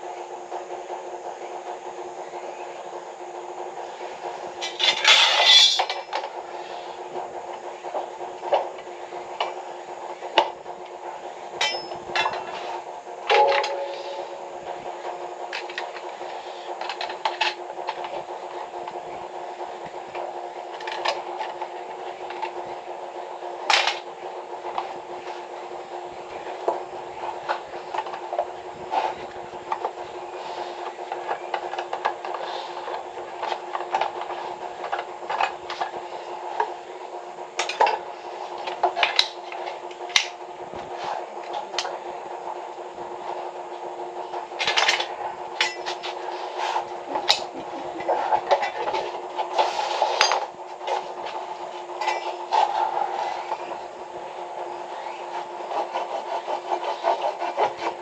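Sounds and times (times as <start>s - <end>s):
steady hum: 0.0s - 58.0s
metal tools clinking: 11.6s - 12.5s.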